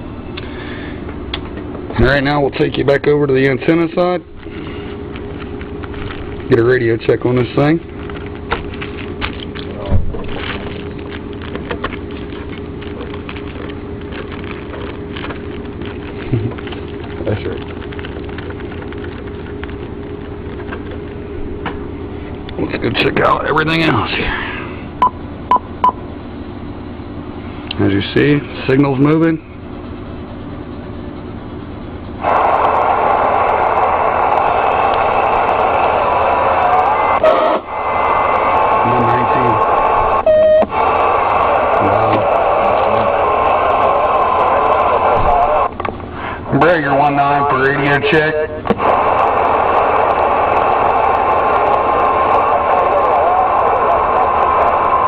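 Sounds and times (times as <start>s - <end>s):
steady hum: 0.0s - 55.0s
radio static hiss with crackles: 4.0s - 21.3s, 32.2s - 45.7s, 46.6s - 55.0s.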